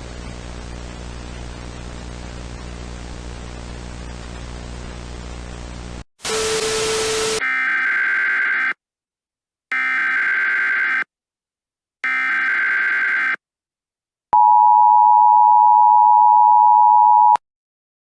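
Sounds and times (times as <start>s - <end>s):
static hiss with low hum: 0.0s - 6.0s
static burst with steady tone: 0.0s - 7.4s.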